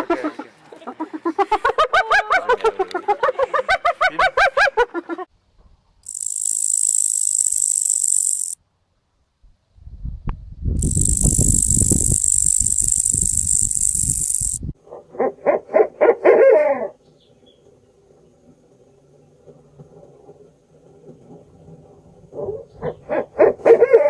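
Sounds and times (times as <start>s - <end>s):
rattling animal calls: 6.1s - 8.6s, 10.8s - 14.6s.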